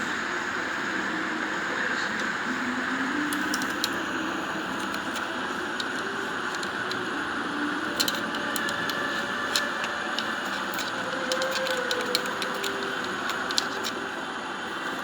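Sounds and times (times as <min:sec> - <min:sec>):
sharp irregular ticks: 0:03.3 - 0:14.2.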